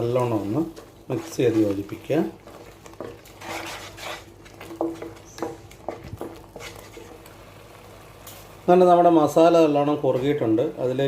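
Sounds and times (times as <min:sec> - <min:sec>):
spoon stirring thick paste: 0:00.0 - 0:07.3.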